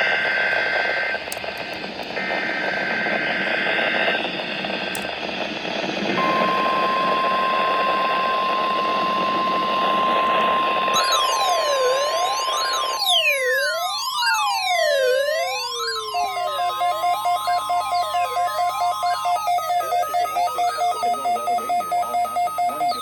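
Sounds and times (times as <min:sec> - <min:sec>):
heavy radio static: 0:00.0 - 0:11.4, 0:16.1 - 0:23.0
steady single-pitch alarm tone: 0:00.0 - 0:23.0
warbling digital data tones: 0:00.0 - 0:23.0
siren-like sweeping tone: 0:06.1 - 0:20.9.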